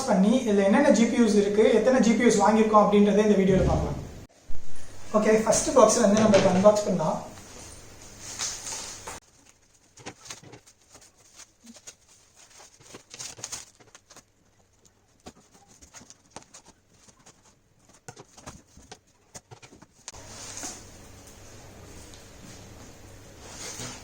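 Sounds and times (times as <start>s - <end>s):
packing rustling: 7.4s - 21.1s.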